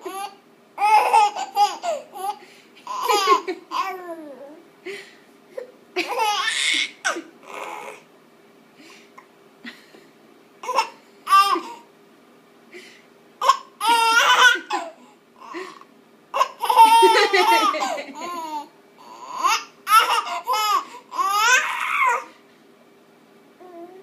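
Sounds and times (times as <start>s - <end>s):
baby giggling: 0.1s - 4.4s, 6.0s - 8.0s, 10.6s - 11.8s, 13.4s - 15.6s, 16.4s - 22.3s.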